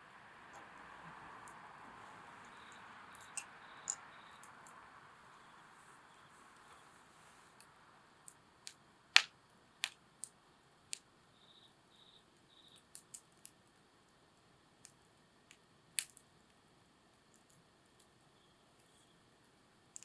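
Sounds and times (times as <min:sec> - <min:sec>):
campfire crackling and popping: 0:08.3 - 0:11.1.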